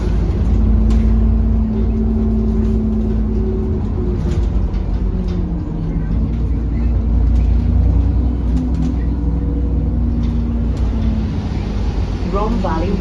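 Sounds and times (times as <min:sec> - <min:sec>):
bus engine rumble: 0:00.0 - 0:13.0.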